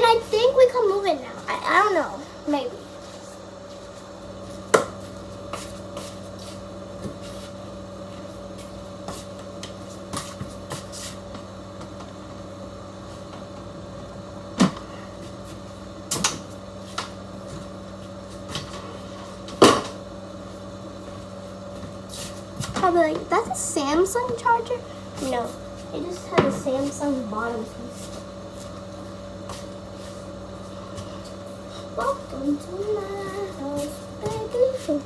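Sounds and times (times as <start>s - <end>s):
steady electrical hum: 0.0s - 35.0s.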